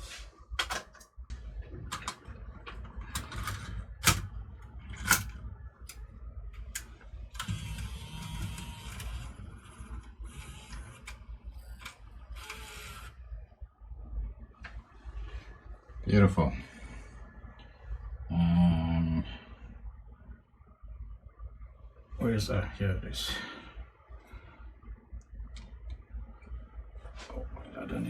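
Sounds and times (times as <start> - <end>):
cassette door clicks: 3.2 - 5.4
tape-loading motor whirring: 6.7 - 13.3.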